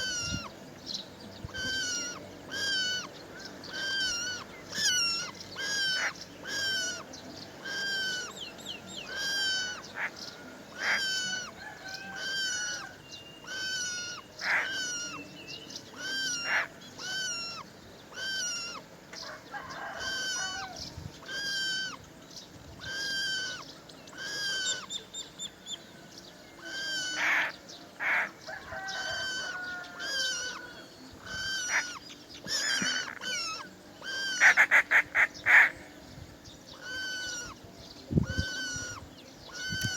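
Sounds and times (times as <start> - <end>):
bird harsh rasping calls: 1.5 - 15.3, 15.9 - 18.9, 19.8 - 22.0, 22.8 - 25.0, 26.6 - 35.9, 36.7 - 37.6, 38.2 - 39.9.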